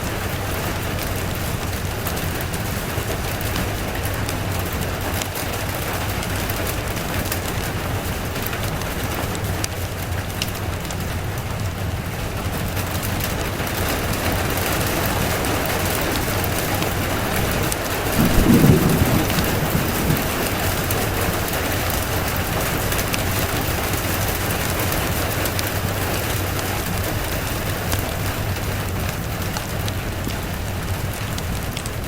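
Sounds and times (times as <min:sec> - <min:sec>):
steady rain falling: 0:00.0 - 0:32.0
low rumble of thunder: 0:11.2 - 0:32.0.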